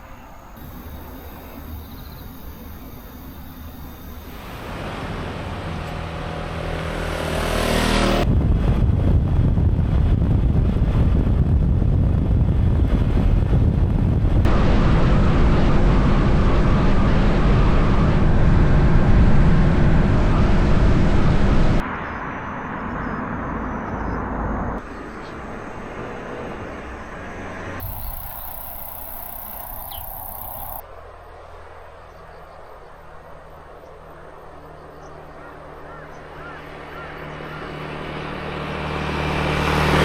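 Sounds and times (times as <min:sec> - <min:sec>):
scooter engine humming: 0:00.0 - 0:08.3, 0:22.8 - 0:30.8
wind and road noise: 0:00.0 - 0:40.0.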